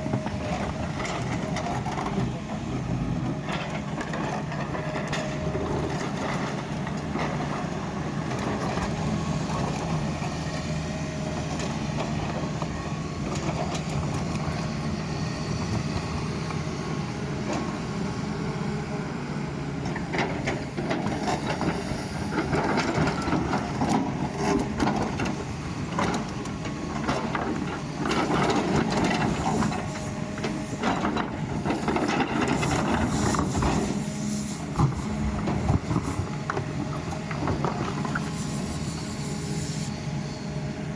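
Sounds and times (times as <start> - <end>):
excavator diesel engine running: 0.0 - 40.9
bucket scraping and clanking: 30.9 - 38.5.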